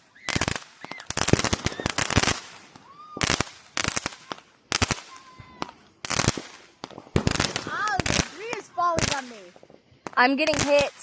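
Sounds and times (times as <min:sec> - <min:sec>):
firework whistle: 0:00.0 - 0:05.8
fireworks crackling bangs: 0:00.0 - 0:11.0.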